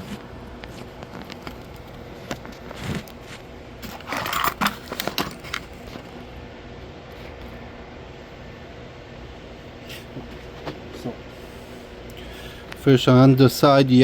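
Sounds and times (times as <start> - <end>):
small metal parts clicking: 3.8 - 5.8
metal parts rattling scrape: 3.8 - 6.1.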